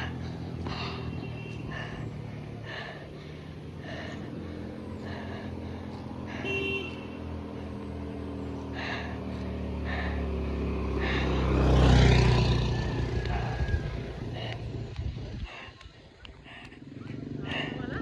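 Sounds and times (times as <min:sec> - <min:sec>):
small helicopter droning: 0:00.0 - 0:18.0.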